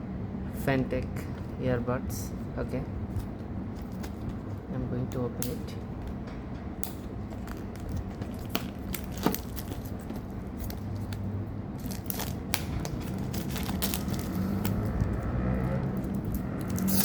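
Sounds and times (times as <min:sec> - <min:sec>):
packaging tearing and crinkling: 0:07.4 - 0:11.2, 0:11.8 - 0:15.2, 0:15.9 - 0:17.0.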